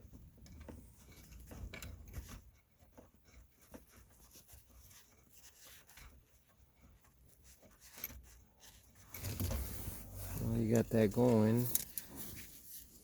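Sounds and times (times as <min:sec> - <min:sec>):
small handling clicks: 0:10.7 - 0:12.1.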